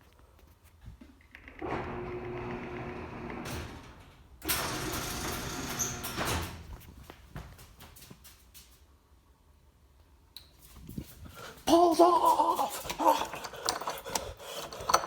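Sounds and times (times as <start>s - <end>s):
garage door opener motor: 1.4s - 6.7s
door rolling along track: 1.4s - 6.8s.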